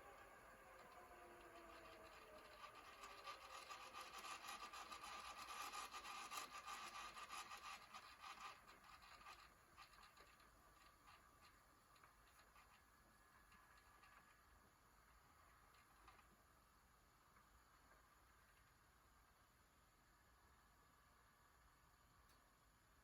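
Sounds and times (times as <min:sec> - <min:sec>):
tape reels whirring: 0:00.0 - 0:16.4.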